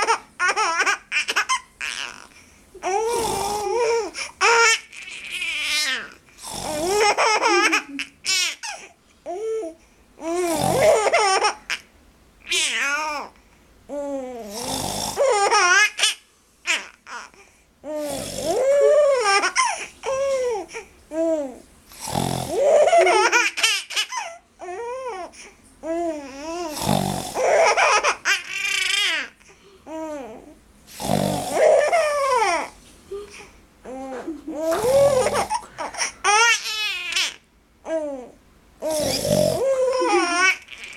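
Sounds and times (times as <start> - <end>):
short rough snore: 3.1 - 3.7, 6.4 - 6.9, 10.4 - 10.9, 14.5 - 15.2, 18.0 - 18.7, 21.9 - 22.6, 26.7 - 27.4, 30.9 - 31.8, 34.7 - 35.7, 38.9 - 39.7
girl laughing: 7.2 - 8.2, 33.1 - 36.3, 39.6 - 40.9.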